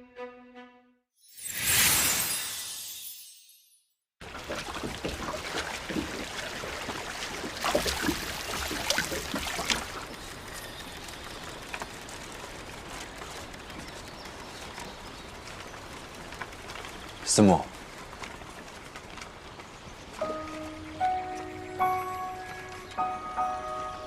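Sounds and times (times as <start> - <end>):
drips and splashes: 4.2 - 13.5
rain falling: 4.2 - 24.0.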